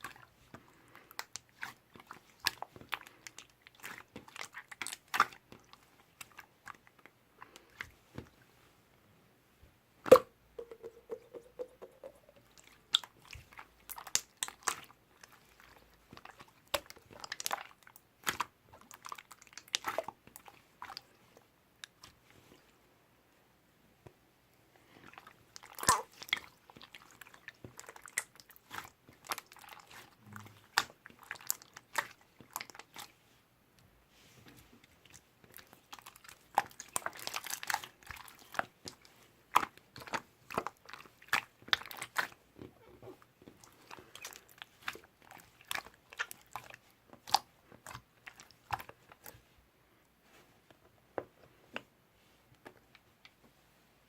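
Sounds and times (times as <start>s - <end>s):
crunching and chewing: 35.0s - 49.4s.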